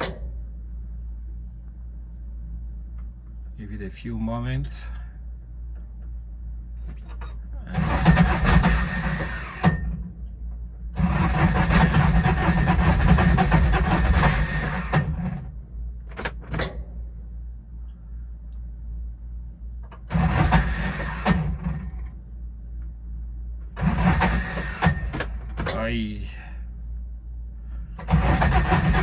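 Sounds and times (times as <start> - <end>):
diesel engine starter cranking: 7.7 - 10.2, 11.0 - 17.0, 19.9 - 22.2, 23.7 - 25.9, 28.0 - 29.0.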